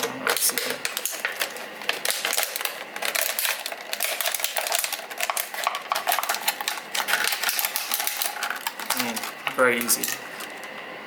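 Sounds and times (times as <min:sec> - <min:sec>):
knife slicing plastic: 0:00.0 - 0:10.6
plastic bottle crackling: 0:00.0 - 0:10.7.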